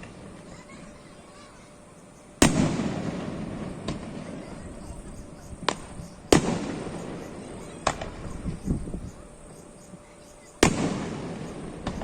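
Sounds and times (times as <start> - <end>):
fireworks booming: 0.0 - 1.7, 2.3 - 12.0
small firework bang: 2.4 - 4.5, 5.6 - 8.3, 10.6 - 12.0.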